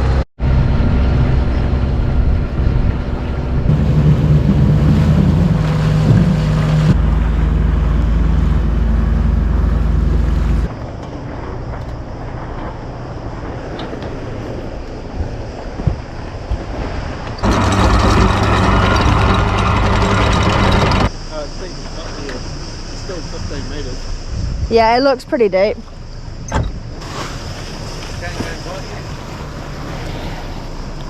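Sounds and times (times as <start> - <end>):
boat engine running: 0.0 - 11.7, 17.4 - 21.8
wind on microphone: 0.5 - 10.8, 24.2 - 25.0
water rushing past hull: 2.0 - 21.1, 26.9 - 31.0.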